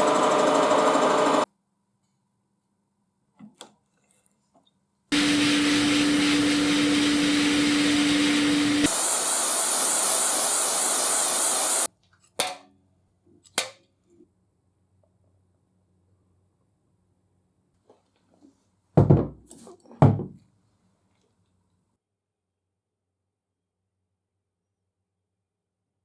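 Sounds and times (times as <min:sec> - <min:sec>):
power tool humming: 0:00.0 - 0:01.5, 0:05.1 - 0:11.9
harsh hissing noise: 0:05.2 - 0:11.9.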